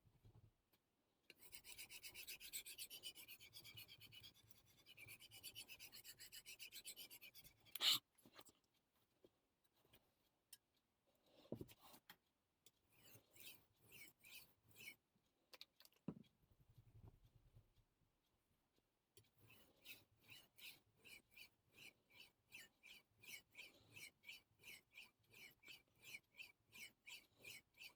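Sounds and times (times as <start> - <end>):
knife sharpening on whetstone: 1.4 - 8.0, 13.4 - 15.0, 19.5 - 27.9.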